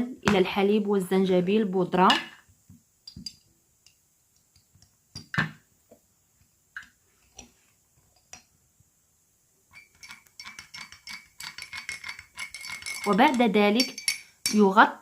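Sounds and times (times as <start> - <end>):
teaspoon tapping against glass: 3.0 - 5.4, 9.7 - 14.7
spoon stirring in glass: 9.7 - 14.7.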